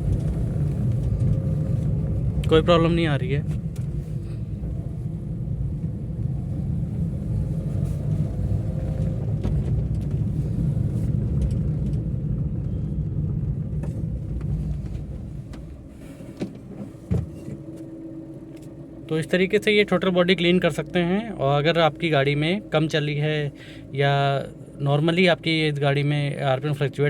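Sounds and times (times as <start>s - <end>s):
van engine rumble and road noise: 0.0s - 27.0s.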